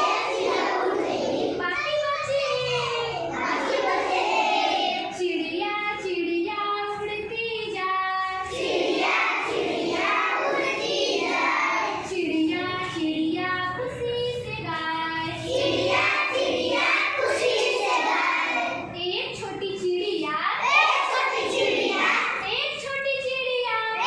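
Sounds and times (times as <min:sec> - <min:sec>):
children singing: 0:00.0 - 0:05.2, 0:08.2 - 0:12.2, 0:15.3 - 0:18.8, 0:20.6 - 0:22.4.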